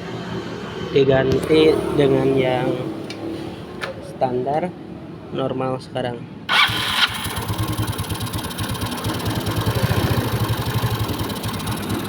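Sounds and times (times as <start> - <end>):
scooter engine idling: 6.5 - 12.0.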